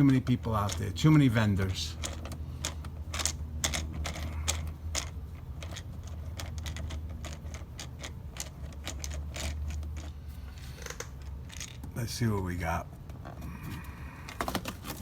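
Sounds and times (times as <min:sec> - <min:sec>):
hand tools clicking and rattling: 0:00.0 - 0:10.2, 0:10.8 - 0:11.9
steady low hum: 0:00.0 - 0:15.0.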